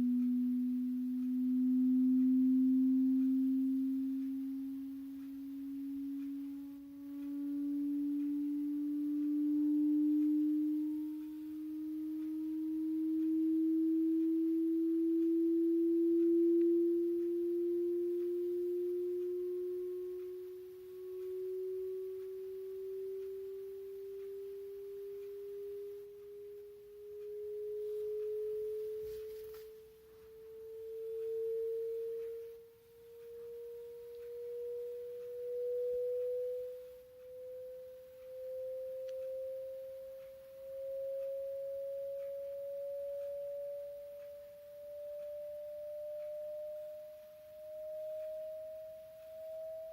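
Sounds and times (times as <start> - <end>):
rising sine test tone: 0.0 - 49.9.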